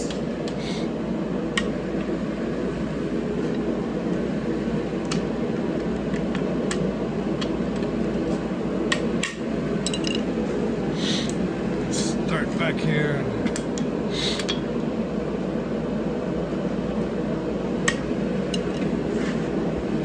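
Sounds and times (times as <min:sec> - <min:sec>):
steady mechanical hum: 0:00.0 - 0:20.0.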